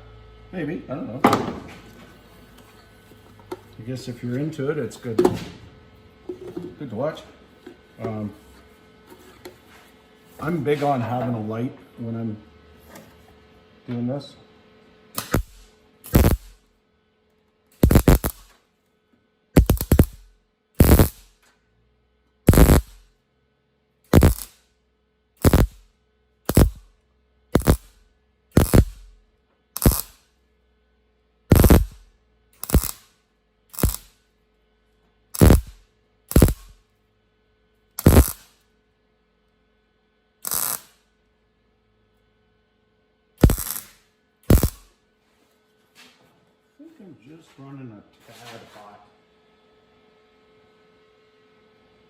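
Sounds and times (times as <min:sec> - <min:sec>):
welding arc crackling: 0:15.2 - 0:16.6, 0:17.8 - 0:18.5, 0:19.6 - 0:21.4, 0:22.5 - 0:23.1, 0:24.1 - 0:24.6, 0:25.4 - 0:26.9, 0:27.5 - 0:29.2, 0:29.8 - 0:30.2, 0:31.5 - 0:33.1, 0:33.7 - 0:34.2, 0:35.4 - 0:36.8, 0:38.0 - 0:38.6, 0:40.4 - 0:41.0, 0:43.4 - 0:44.9.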